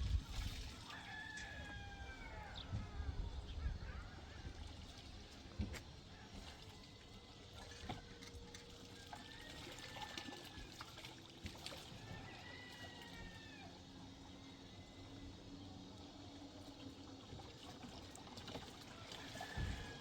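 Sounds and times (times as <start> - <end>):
water pouring and trickling: 0.0 - 1.0, 4.7 - 13.4, 16.4 - 20.0.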